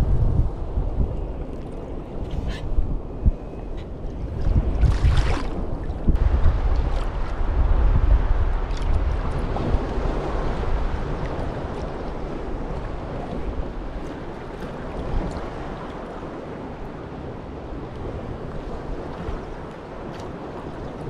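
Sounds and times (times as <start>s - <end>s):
wind buffeting microphone: 0.0s - 21.0s
sea water sloshing: 4.0s - 7.6s.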